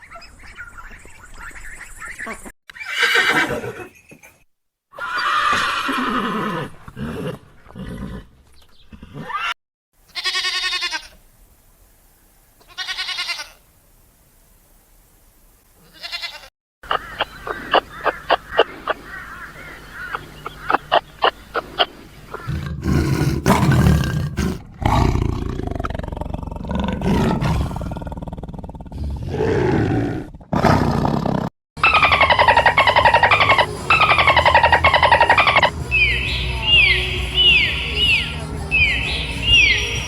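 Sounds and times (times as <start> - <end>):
high calls falling in pitch: 31.8 - 40.0.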